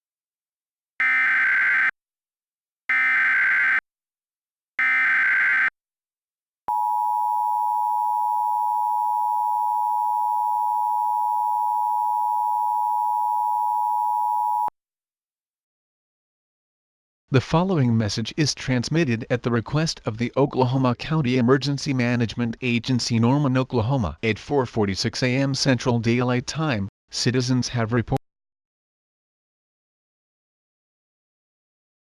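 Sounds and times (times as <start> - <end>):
two-tone attention signal: 6.7 - 14.7.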